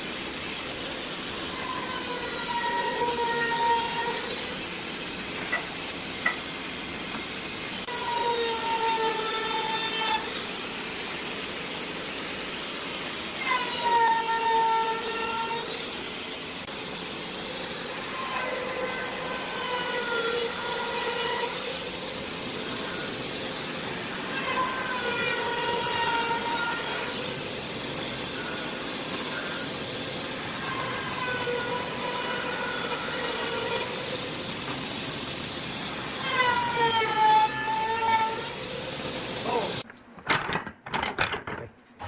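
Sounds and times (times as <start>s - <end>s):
steady hiss: 0.0s - 7.9s, 8.7s - 13.4s
power tool motor whining: 18.0s - 39.8s.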